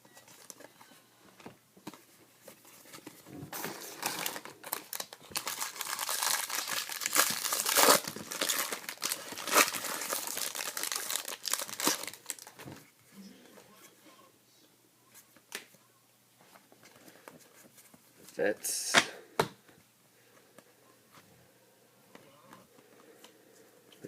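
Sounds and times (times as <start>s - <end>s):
wrapper crinkling and tearing: 3.6s - 12.6s.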